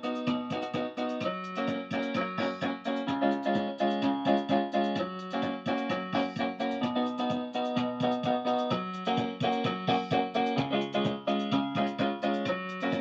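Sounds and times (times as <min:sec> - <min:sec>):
electronic keyboard piano notes: 0:00.0 - 0:13.0.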